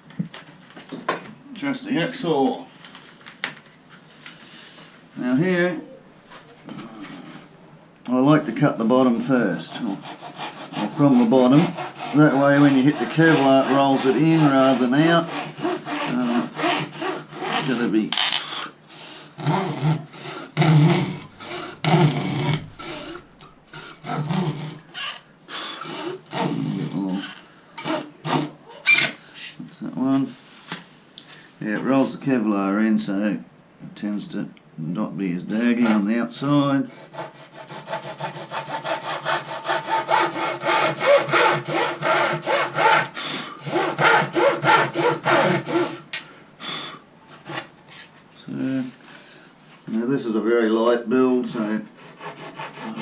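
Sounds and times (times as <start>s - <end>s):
hacksaw cutting: 9.4s - 18.0s, 19.0s - 25.2s, 25.8s - 27.2s, 27.8s - 28.5s, 36.9s - 46.0s, 52.0s - 53.0s.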